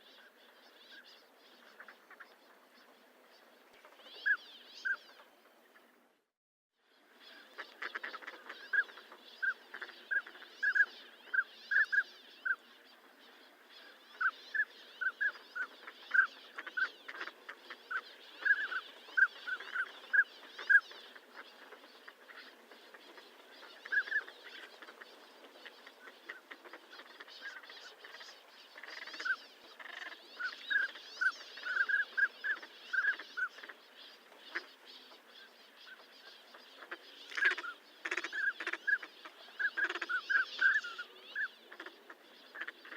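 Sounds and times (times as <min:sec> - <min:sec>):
faint natural ambience: 0:00.0 - 0:42.9
duck calling: 0:36.8 - 0:41.9.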